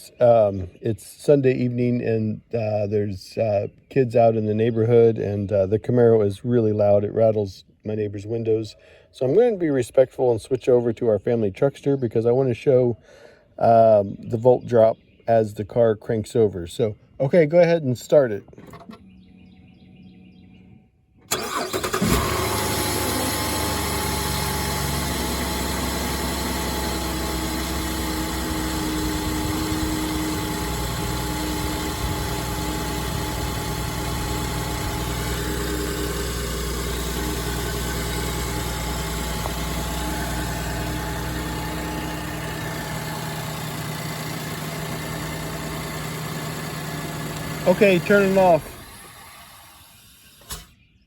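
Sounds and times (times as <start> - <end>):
car engine starting and idling: 21.2 - 50.8.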